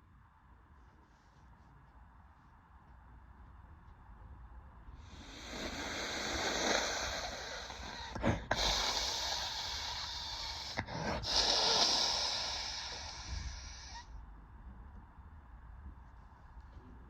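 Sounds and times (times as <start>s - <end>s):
woman blowing her nose: 5.4s - 14.0s.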